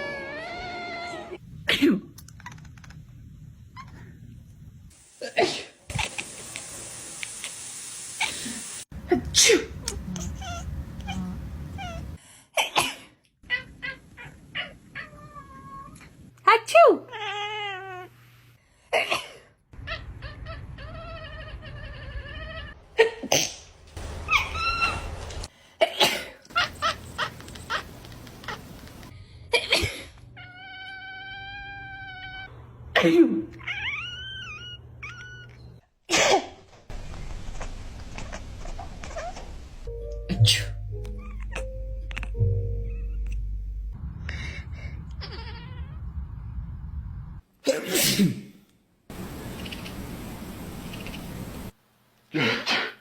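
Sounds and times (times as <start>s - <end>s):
cat meowing: 10.1s - 12.2s
person sneezing: 47.6s - 48.6s, 52.3s - 53.0s.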